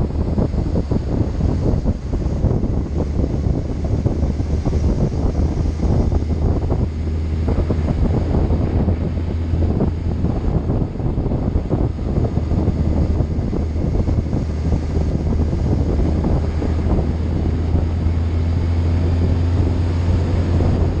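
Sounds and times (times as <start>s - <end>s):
low engine drone: 0.0s - 21.0s
wind buffeting microphone: 0.0s - 21.0s.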